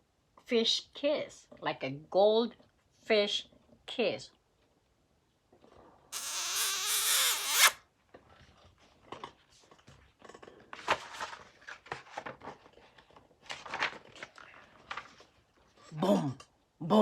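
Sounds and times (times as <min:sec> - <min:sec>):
paper page turning: 0:13.4 - 0:15.3.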